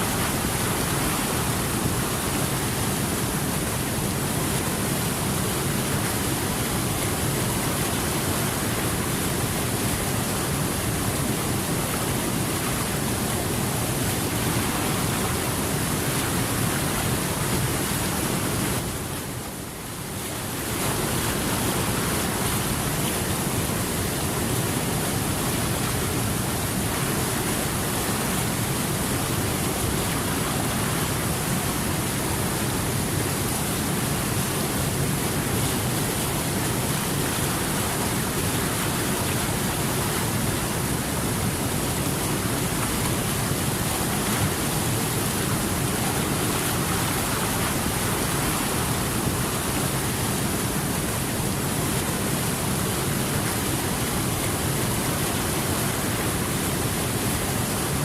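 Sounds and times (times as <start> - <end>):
flowing water rushing: 0.0 - 58.0.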